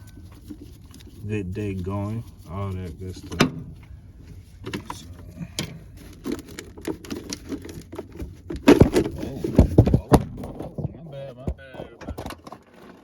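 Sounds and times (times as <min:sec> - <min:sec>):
handling clicks and rustling: 0:00.0 - 0:13.0
heavy thumps: 0:08.1 - 0:12.6.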